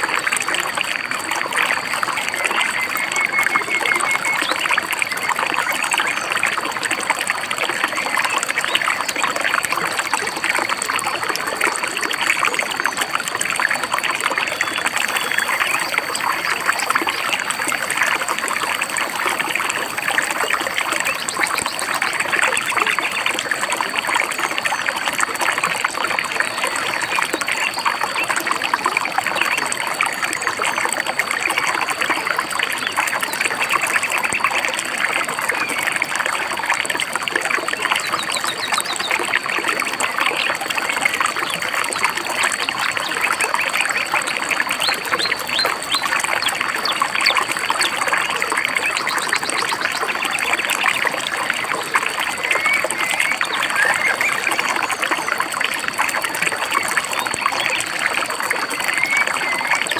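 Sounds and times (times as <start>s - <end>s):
river babbling: 0.2s - 28.5s.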